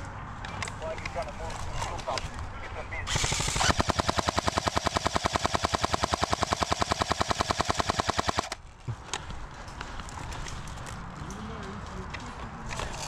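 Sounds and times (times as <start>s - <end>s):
airsoft gun full-auto burst: 3.1s - 8.6s.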